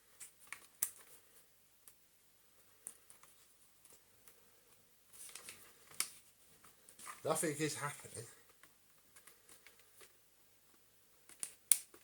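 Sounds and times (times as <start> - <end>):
faint clicks and taps: 2.6 - 7.2.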